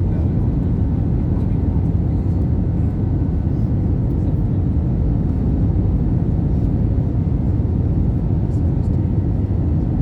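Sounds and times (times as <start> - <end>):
airplane cabin engine rumble: 0.0 - 10.0.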